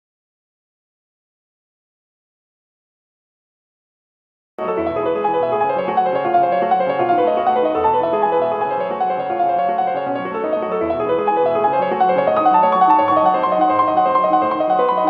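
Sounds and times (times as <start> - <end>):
piano music: 4.6 - 15.0.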